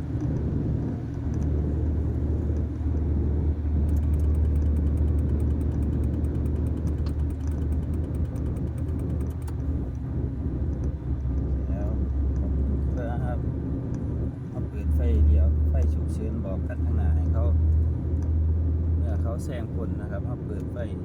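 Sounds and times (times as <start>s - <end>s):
truck engine humming: 0.0s - 21.0s
rapid light ticking: 0.1s - 10.0s.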